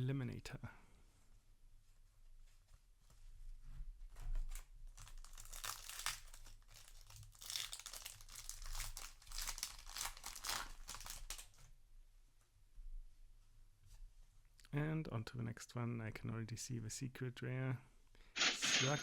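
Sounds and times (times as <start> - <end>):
foil wrapper crinkling and tearing: 4.9 - 11.7.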